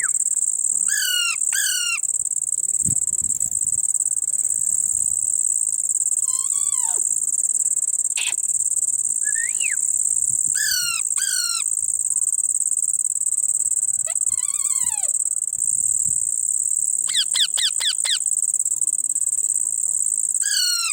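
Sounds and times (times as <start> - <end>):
high-pitched insect drone: 0.0 - 20.9
parrot gliding calls: 0.9 - 2.0, 6.3 - 7.0, 10.6 - 11.6, 14.0 - 15.1, 20.4 - 20.9.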